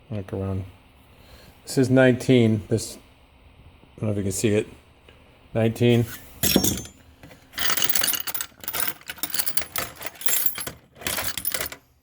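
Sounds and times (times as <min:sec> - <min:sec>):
metal tools clattering in toolbox: 0:06.4 - 0:11.8.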